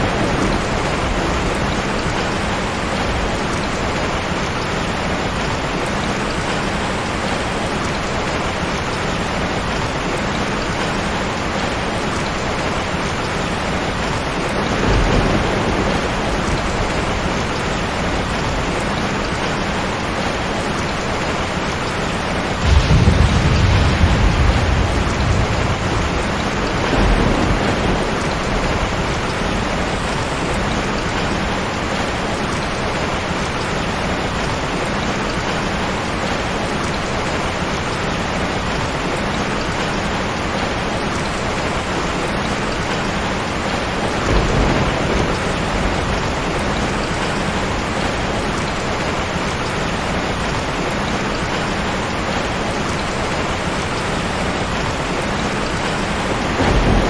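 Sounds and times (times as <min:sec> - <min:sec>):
thunder rumbling: 0:00.0 - 0:04.8, 0:11.8 - 0:19.8, 0:22.3 - 0:32.4, 0:43.8 - 0:49.8, 0:54.6 - 0:57.0
heavy rain falling: 0:00.0 - 0:57.0.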